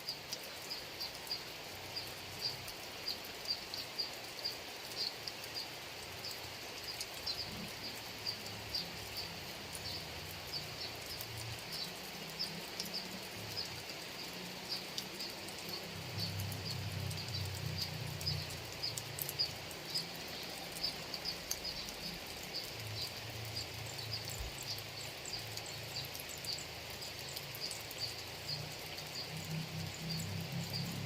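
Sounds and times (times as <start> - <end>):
steady rain falling: 0.0 - 31.0.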